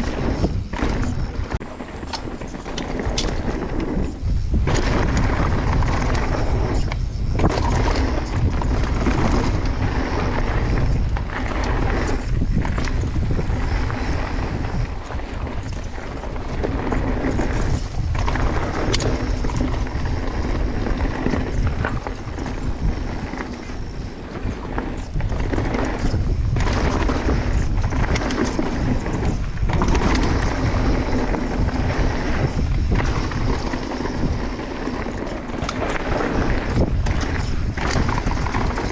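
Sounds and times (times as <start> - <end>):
bike clattering: 0.0 - 38.9
tyres rolling over rock: 0.0 - 38.9
wind on microphone: 0.0 - 38.9.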